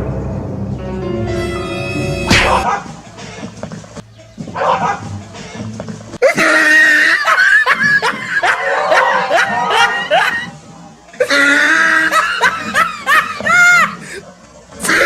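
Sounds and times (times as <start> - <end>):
comic laugh effect: 6.2 - 10.5, 11.2 - 14.0.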